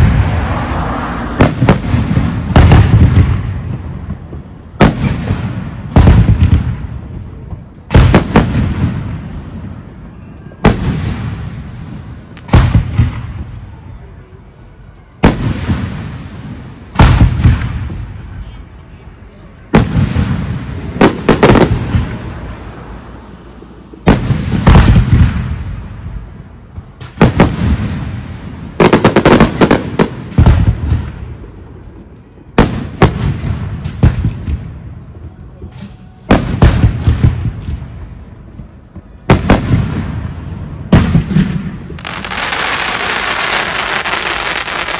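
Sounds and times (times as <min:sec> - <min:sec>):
rolling echo of bangs: 0:01.4 - 0:09.8, 0:15.2 - 0:18.1, 0:24.0 - 0:31.4, 0:36.3 - 0:38.2, 0:39.3 - 0:42.5.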